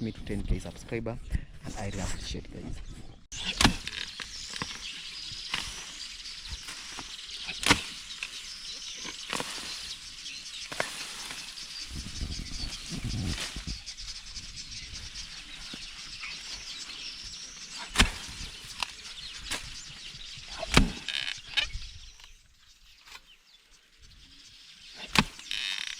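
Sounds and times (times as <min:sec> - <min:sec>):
birds chirping: 0:00.0 - 0:25.9
rustling of weeds and grass: 0:01.7 - 0:25.9
tool striking soil: 0:03.4 - 0:08.4, 0:10.6 - 0:11.5, 0:17.8 - 0:19.7.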